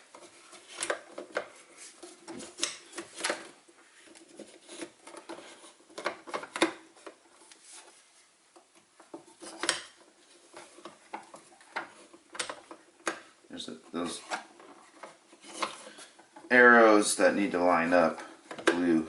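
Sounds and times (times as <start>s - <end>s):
sharp clicks and knocks: 8.5s - 16.5s.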